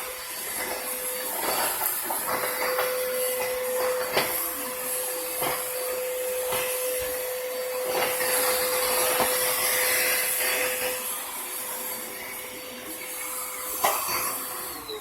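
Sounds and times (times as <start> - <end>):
vacuum cleaner running: 0.0 - 15.0.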